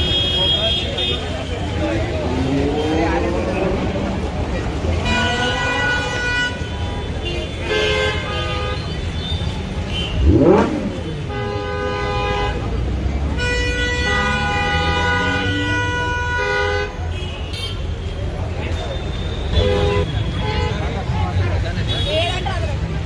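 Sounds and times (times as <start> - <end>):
car horns honking: 0.0 - 21.0
engine revving: 1.8 - 5.4, 10.0 - 11.5.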